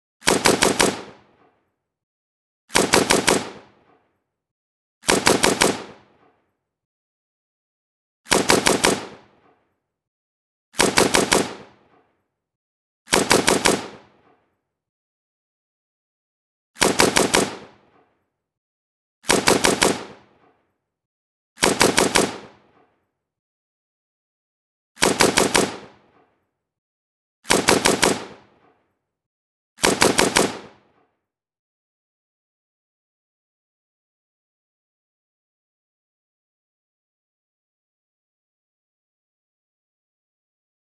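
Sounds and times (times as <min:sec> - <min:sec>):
assault rifle automatic bursts: 0:00.2 - 0:01.5, 0:02.7 - 0:03.9, 0:05.0 - 0:06.3, 0:08.3 - 0:09.5, 0:10.8 - 0:12.0, 0:13.1 - 0:14.3, 0:16.8 - 0:18.0, 0:19.2 - 0:20.5, 0:21.6 - 0:22.8, 0:25.0 - 0:26.2, 0:27.5 - 0:28.7, 0:29.8 - 0:30.9.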